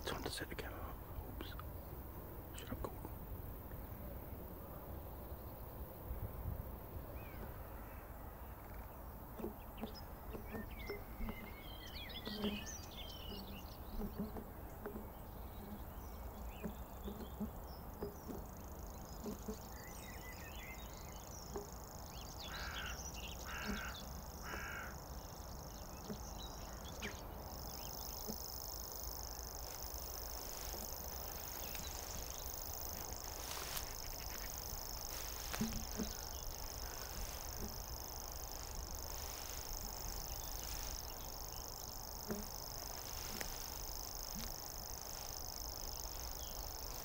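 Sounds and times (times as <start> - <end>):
birds chirping: 0.0 - 47.0
warbler reeling trill: 15.0 - 25.4, 26.1 - 47.0
short bird calls: 22.4 - 25.0.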